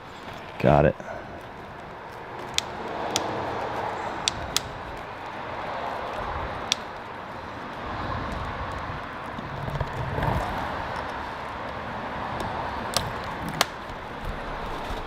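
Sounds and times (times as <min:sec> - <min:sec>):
connectors clicking: 0:01.4 - 0:05.4
handling and rustling: 0:13.0 - 0:15.0.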